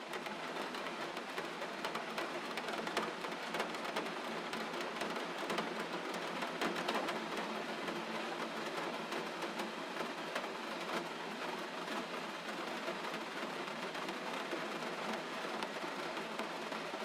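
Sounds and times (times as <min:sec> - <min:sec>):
ticks of raindrops: 0:00.1 - 0:17.0.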